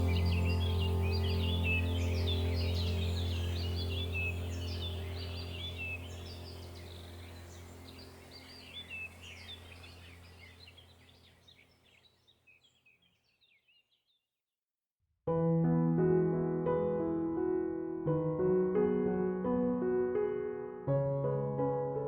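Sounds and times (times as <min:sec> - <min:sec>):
low steady drone: 0:00.0 - 0:10.9
small birds chirping: 0:00.0 - 0:14.3.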